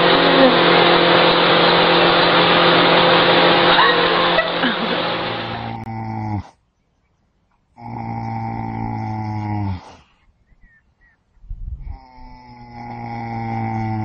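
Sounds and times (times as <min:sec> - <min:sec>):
animal snoring: 0:05.7 - 0:06.6, 0:07.8 - 0:10.1, 0:11.8 - 0:14.0.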